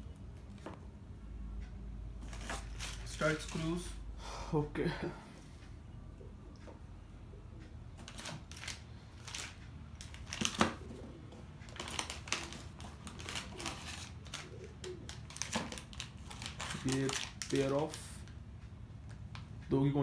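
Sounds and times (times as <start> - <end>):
handling small parts and plastic packets: 2.2 - 4.0, 8.0 - 10.8, 11.6 - 18.4.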